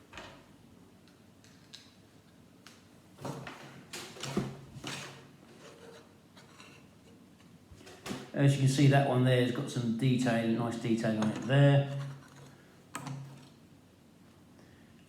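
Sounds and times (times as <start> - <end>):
plastic knocks and rustling: 3.2 - 5.3.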